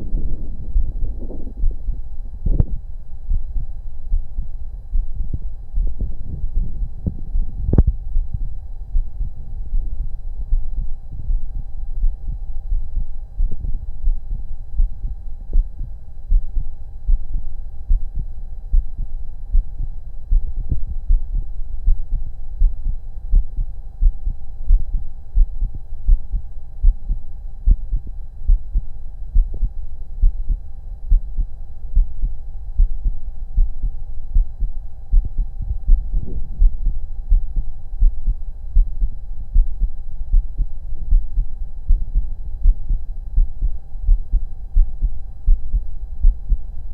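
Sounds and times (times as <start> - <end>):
faint steady hum: 0.0 - 46.9
heartbeat through a stethoscope: 0.0 - 46.9.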